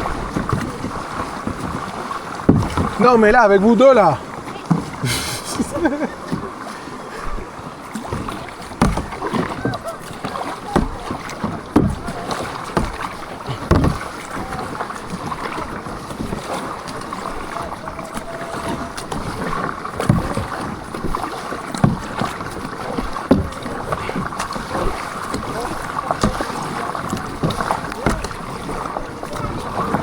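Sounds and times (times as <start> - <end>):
paddle water swishing: 0.0 - 30.0
low knocks: 2.4 - 6.4.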